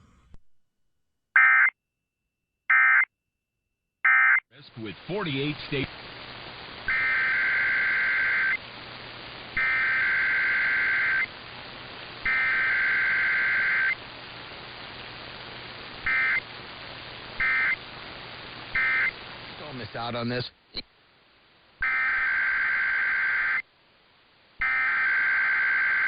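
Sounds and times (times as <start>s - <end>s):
faint hiss: 4.6s - 21.9s
buzzy warbling data bursts: 6.9s - 8.6s, 9.6s - 11.3s, 12.2s - 14.0s, 16.0s - 16.4s, 17.4s - 17.8s, 18.7s - 19.2s.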